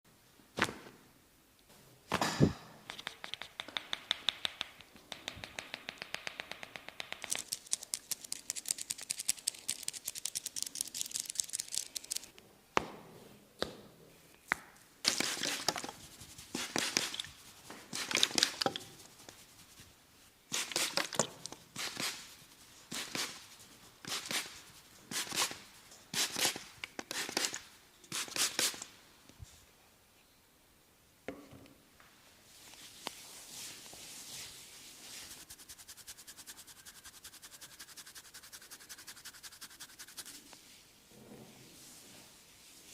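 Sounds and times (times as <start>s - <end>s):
hands tapping clicks: 2.8s - 12.2s
crackling rubbing strokes: 15.1s - 21.0s.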